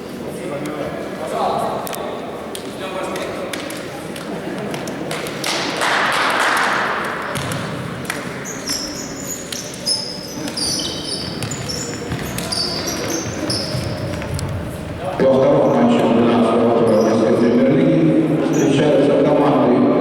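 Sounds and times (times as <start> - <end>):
ball kicks and bounces: 7.3 - 7.8, 11.3 - 14.6
shoes squeaking on floor: 8.3 - 16.0, 16.8 - 17.4.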